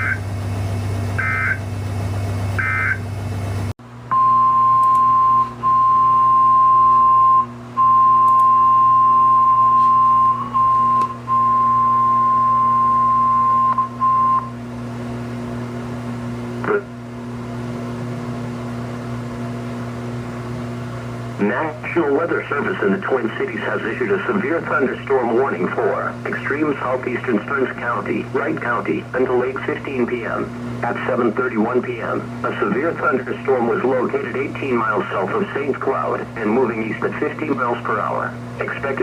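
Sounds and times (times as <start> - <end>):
steady warning alarm tone: 0.0 - 0.3, 1.2 - 1.7, 2.6 - 3.1, 4.1 - 14.6
receiver hum: 0.0 - 39.0
click: 4.8 - 5.0.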